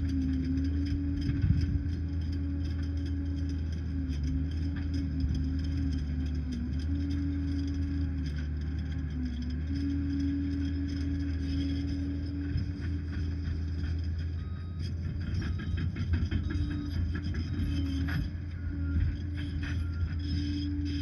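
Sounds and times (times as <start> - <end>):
bulldozer diesel engine droning: 0.0 - 21.0
metallic knocks and rattles: 12.1 - 18.4.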